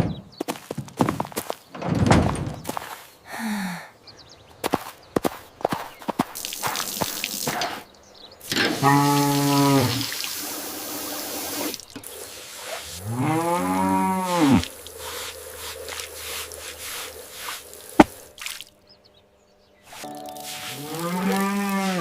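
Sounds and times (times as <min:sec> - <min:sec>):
cow mooing: 0:08.7 - 0:10.1, 0:12.9 - 0:14.8, 0:20.7 - 0:22.0.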